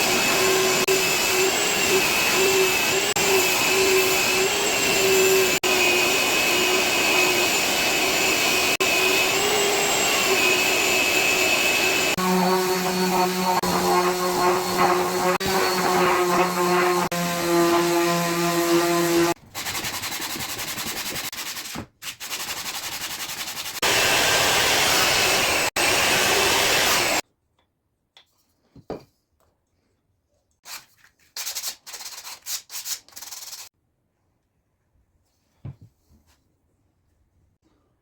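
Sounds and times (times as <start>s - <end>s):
sanding wood: 8.8s - 27.2s.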